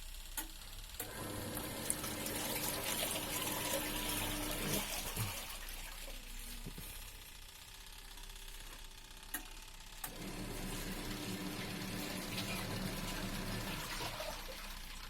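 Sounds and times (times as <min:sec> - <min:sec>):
low motor hum: 0:00.0 - 0:14.2
water running into washing machine: 0:01.0 - 0:07.2, 0:10.0 - 0:15.0.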